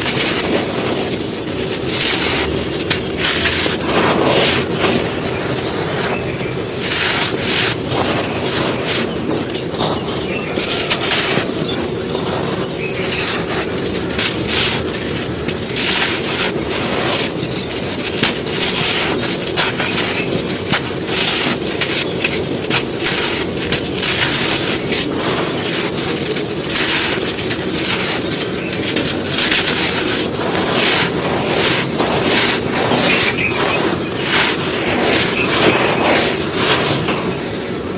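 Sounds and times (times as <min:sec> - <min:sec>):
sand shapes crunching on floor: 0:00.0 - 0:37.9.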